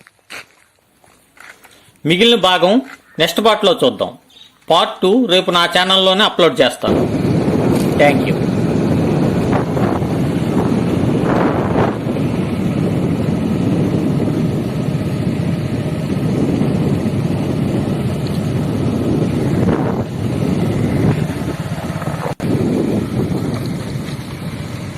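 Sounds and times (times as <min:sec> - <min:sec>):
wind buffeting microphone: 0:06.9 - 0:24.9.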